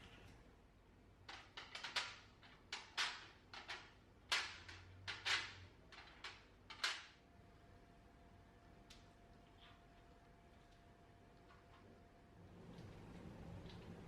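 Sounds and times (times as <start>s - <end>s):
faint steady hum: 5.7s - 14.0s.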